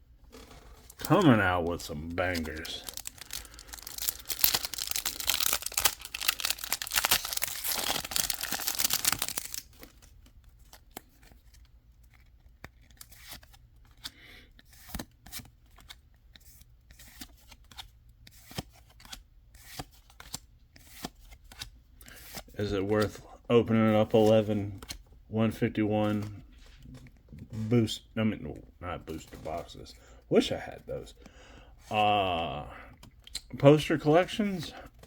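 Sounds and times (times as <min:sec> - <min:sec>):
foil pack tearing and crinkling: 0:02.1 - 0:10.0.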